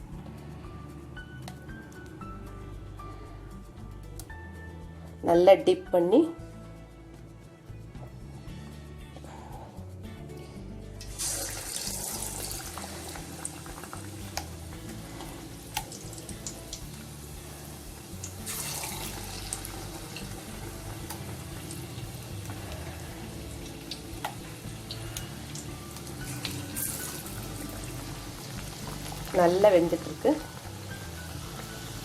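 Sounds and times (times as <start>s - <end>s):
deep-frying sizzle with pops: 11.0s - 32.0s.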